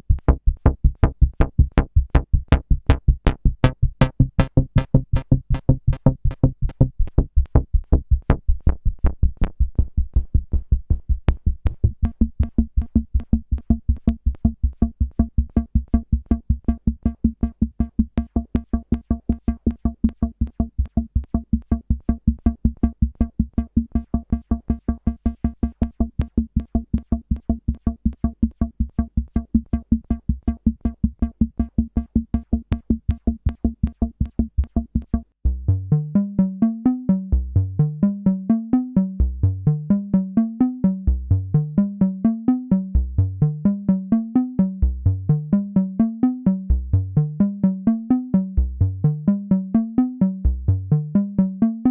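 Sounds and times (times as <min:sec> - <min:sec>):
synthesizer bass pulse: 0:00.0 - 0:51.9.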